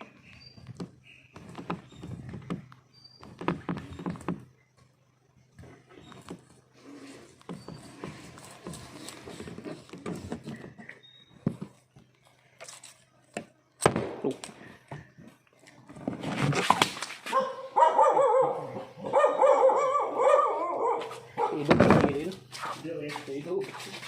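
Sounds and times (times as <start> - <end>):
knocks and scraping: 0.0 - 13.6, 14.4 - 17.6, 21.0 - 24.0
dog whining: 17.3 - 21.6.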